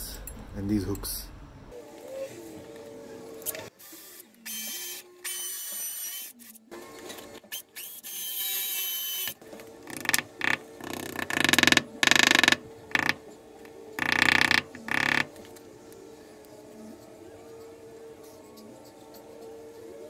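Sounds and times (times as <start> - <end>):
power tool motor bursts: 7.8 - 13.2, 14.0 - 15.3.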